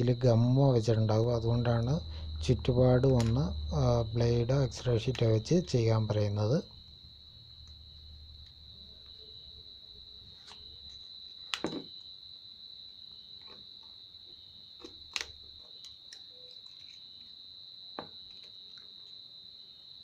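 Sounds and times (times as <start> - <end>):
high cricket-like tone: 0.0 - 20.0.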